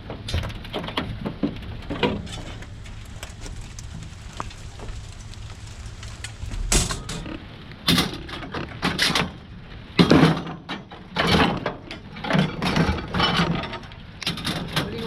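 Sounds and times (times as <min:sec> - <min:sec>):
scrap metal knocks and clanks: 0:00.0 - 0:04.4, 0:10.0 - 0:15.0.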